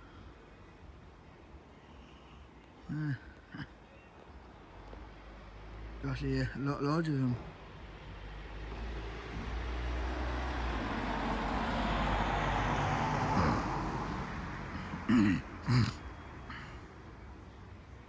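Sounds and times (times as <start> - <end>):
road vehicle passing: 4.3 - 18.0
short low vocal sounds: 13.3 - 13.9.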